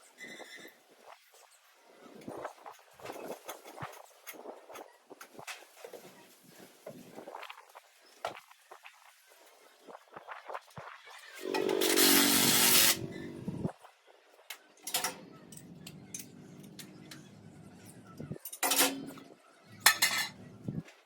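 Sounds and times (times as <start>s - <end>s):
power tool running: 11.4s - 13.5s.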